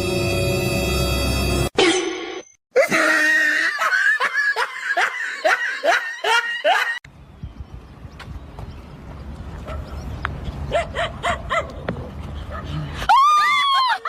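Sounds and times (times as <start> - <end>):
person laughing hard: 2.8 - 7.0.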